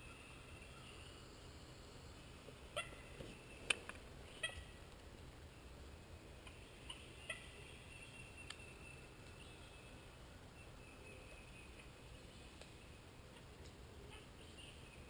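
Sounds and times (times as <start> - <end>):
soft steady background: 0.0 - 15.0
turkey clucks and yelps: 2.7 - 3.1, 3.7 - 4.7, 6.4 - 8.6, 13.3 - 14.7.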